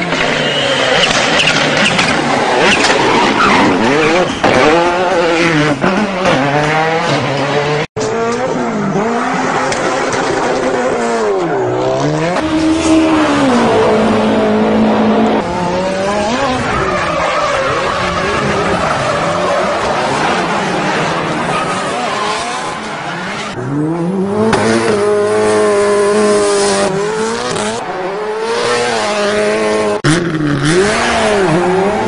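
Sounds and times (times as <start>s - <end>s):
tyres squealing and skidding: 0.0s - 6.4s, 15.4s - 24.0s
race car engine revving: 0.0s - 32.0s.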